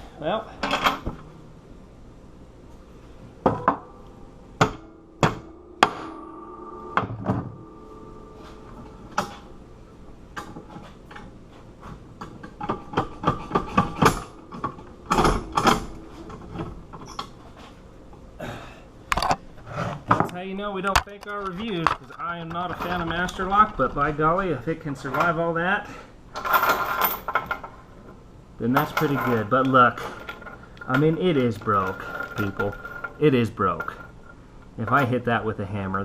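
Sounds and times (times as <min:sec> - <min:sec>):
sharp metallic knocks and clanks: 0:03.4 - 0:17.4.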